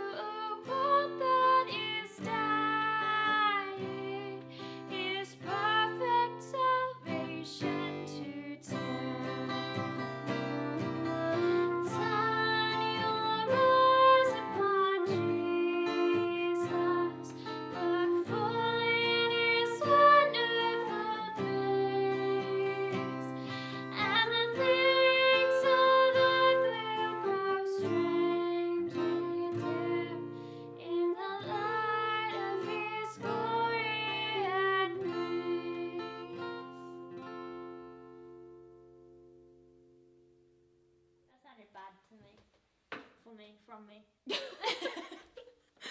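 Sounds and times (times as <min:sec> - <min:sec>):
acoustic guitar song: 0:00.0 - 0:41.6.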